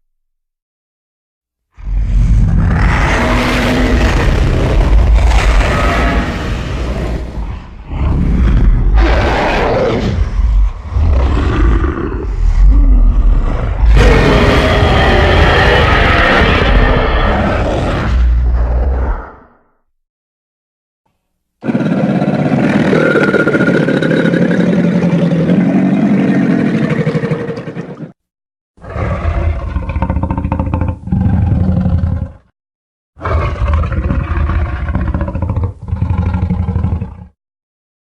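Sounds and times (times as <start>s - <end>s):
dragon roars: 1.8s - 19.6s, 21.6s - 28.0s.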